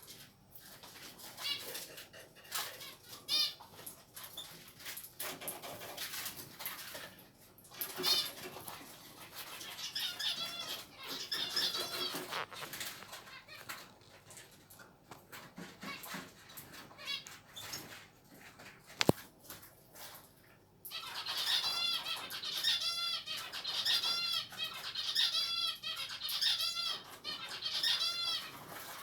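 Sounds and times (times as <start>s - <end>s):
small birds chirping: 2.5s - 4.7s, 7.7s - 14.5s, 20.8s - 29.0s
wing flaps and rustling: 10.8s - 20.4s.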